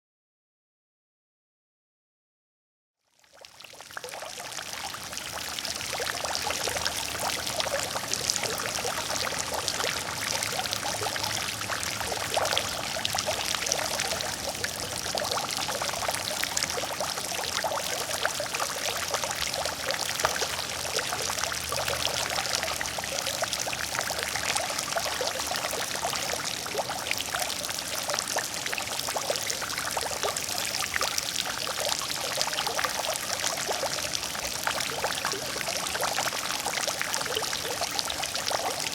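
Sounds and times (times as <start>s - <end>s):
fountain water splashing into pool: 3.3s - 38.9s.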